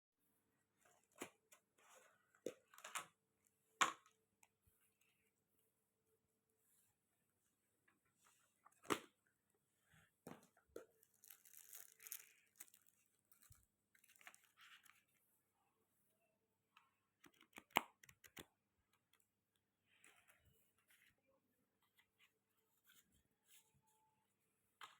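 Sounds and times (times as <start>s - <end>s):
paper and plastic rustling: 10.8s - 15.2s.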